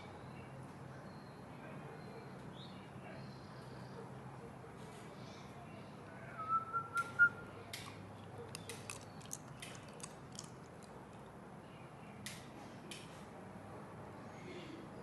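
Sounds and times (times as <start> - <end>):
puppy crunching hard candy: 7.8 - 11.3.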